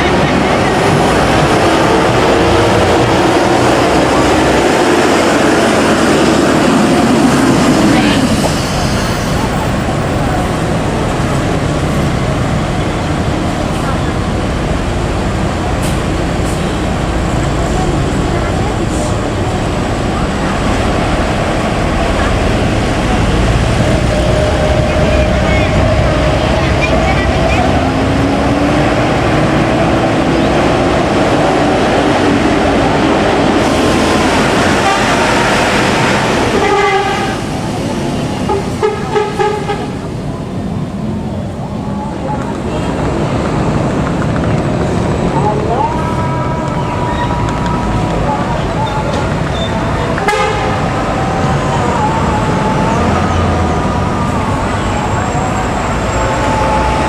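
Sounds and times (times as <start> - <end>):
moving vehicle rumble: 0.0 - 57.0
faint wavering tone: 23.7 - 28.0
short pitched toot: 23.8 - 28.0.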